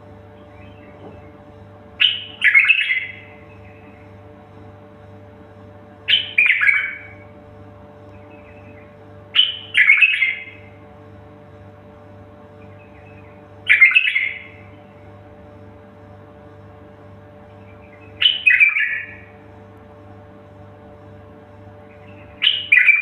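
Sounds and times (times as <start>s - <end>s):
steady low hum: 0.0s - 23.0s
songbird singing falling phrases: 0.3s - 4.2s, 6.1s - 7.2s, 8.0s - 10.7s, 12.6s - 15.0s, 17.5s - 19.3s, 21.8s - 23.0s.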